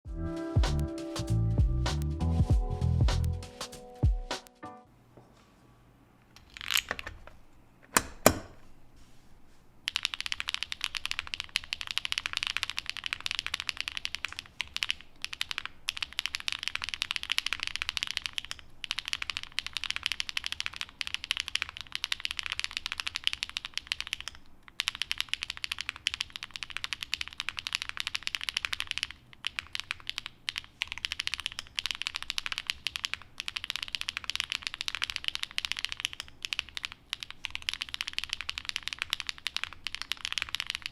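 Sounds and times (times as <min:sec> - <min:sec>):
fast mechanical keyboard typing: 0:09.9 - 0:40.9.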